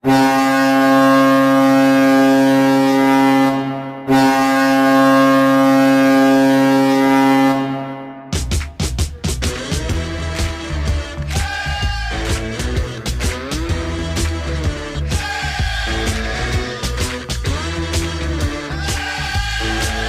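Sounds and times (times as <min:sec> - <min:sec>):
goal horn blasts: 0:00.0 - 0:10.5.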